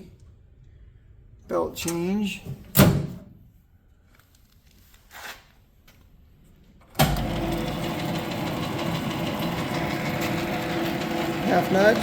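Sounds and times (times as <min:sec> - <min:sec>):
lathe motor humming: 0:07.2 - 0:12.0.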